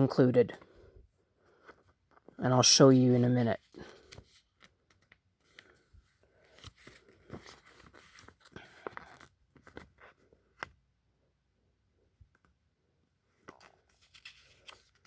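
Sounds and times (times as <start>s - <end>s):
paper pages turning: 3.6s - 5.8s, 6.4s - 10.8s, 13.4s - 15.0s.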